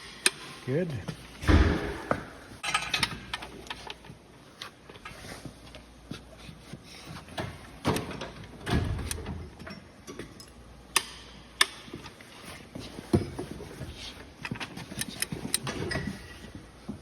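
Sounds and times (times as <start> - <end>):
metal clinks of tools and parts: 2.6 - 4.0.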